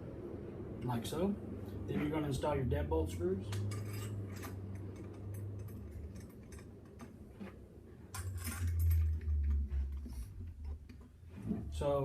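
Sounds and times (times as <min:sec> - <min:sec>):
screwdriver ticking and scraping: 0:03.5 - 0:07.6.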